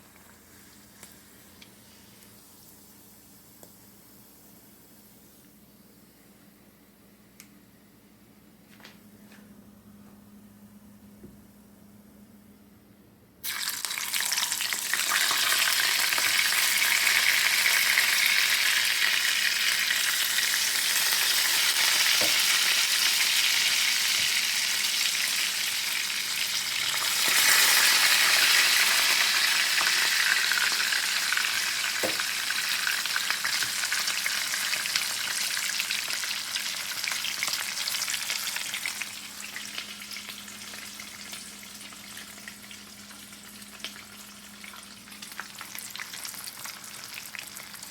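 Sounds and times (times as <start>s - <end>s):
food sizzling in a pan: 13.4s - 47.9s.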